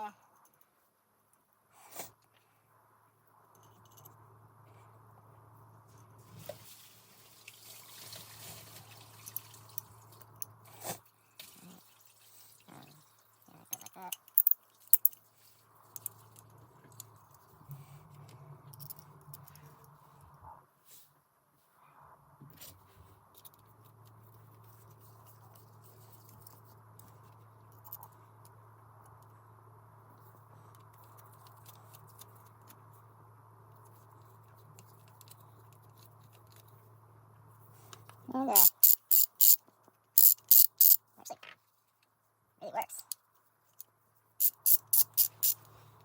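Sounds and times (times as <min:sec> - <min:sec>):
low steady hum: 0:00.0 - 0:46.0
small steel parts clicking: 0:13.7 - 0:15.2, 0:15.9 - 0:17.1, 0:18.7 - 0:19.6, 0:38.6 - 0:39.6, 0:40.2 - 0:41.0, 0:43.0 - 0:45.7.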